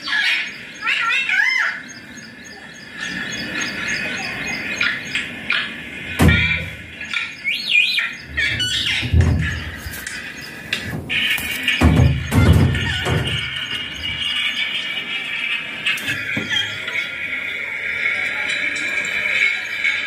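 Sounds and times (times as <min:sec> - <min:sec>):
parakeet warbling chirps: 0:06.4 - 0:14.1
dull low thuds: 0:08.3 - 0:10.1.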